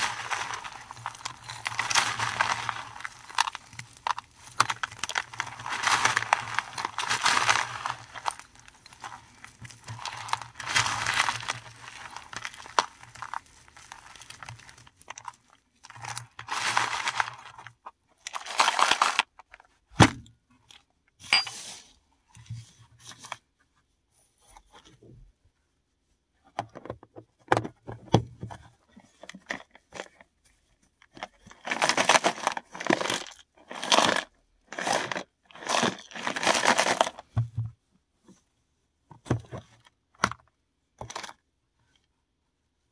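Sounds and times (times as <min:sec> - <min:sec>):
mothballs crunching by hand: 0:00.0 - 0:17.6, 0:18.3 - 0:19.3.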